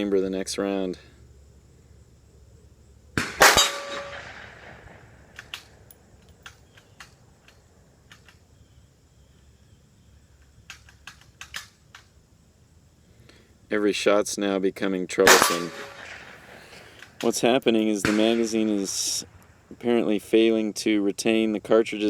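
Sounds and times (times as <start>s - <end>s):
rifle shot: 3.2s - 5.8s, 15.2s - 17.3s, 18.0s - 18.9s
bullet ringing on steel target: 3.4s - 4.4s, 15.3s - 16.5s.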